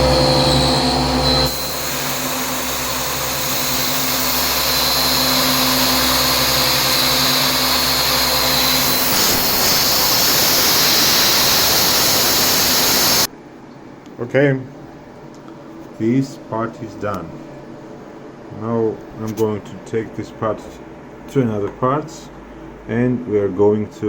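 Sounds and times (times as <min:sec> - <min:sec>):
compressed air hissing: 0:00.0 - 0:13.3
high machine whine: 0:00.0 - 0:13.3
machine hum: 0:00.0 - 0:13.5.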